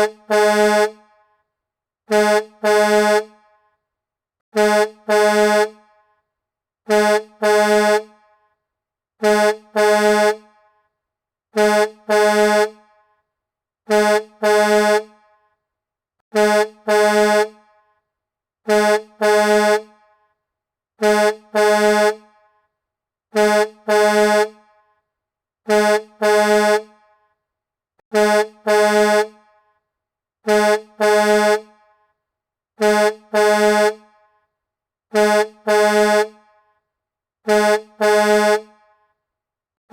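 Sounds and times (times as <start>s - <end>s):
truck horn double blast: 0.0s - 1.2s, 2.1s - 3.6s, 4.5s - 6.1s, 6.9s - 8.5s, 9.2s - 10.9s, 11.5s - 13.2s, 13.9s - 15.4s, 16.3s - 17.9s, 18.6s - 20.3s, 21.0s - 22.6s, 23.3s - 24.9s, 25.6s - 27.1s, 28.1s - 29.6s, 30.4s - 32.0s, 32.8s - 34.2s, 35.1s - 36.6s, 37.4s - 38.9s.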